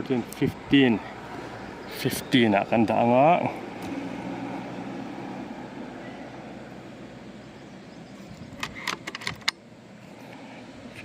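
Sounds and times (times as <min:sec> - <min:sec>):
rifle scope turret clicks: 0:08.4 - 0:09.6.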